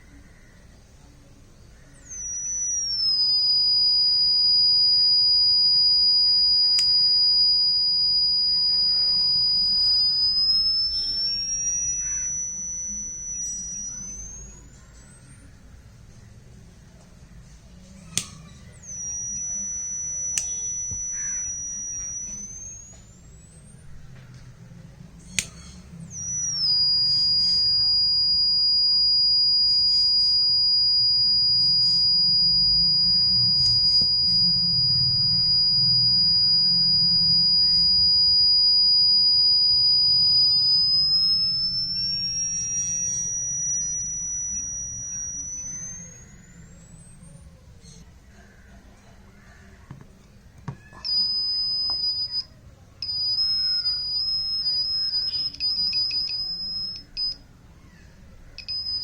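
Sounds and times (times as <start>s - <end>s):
sharp clicks: 2.0s - 14.6s, 18.1s - 23.7s, 25.2s - 48.0s, 50.0s - 57.4s, 58.6s - 59.0s
piezo buzzer alarm tone: 2.0s - 14.7s, 18.1s - 23.0s, 25.4s - 47.1s, 51.0s - 57.4s, 58.6s - 59.0s.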